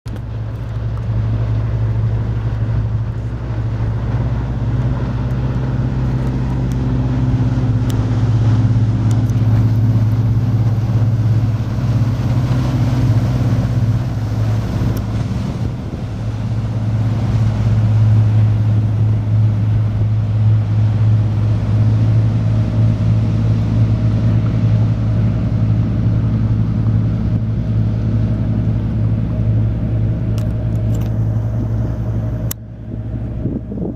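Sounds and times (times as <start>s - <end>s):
boat engines droning: 0.1s - 33.9s.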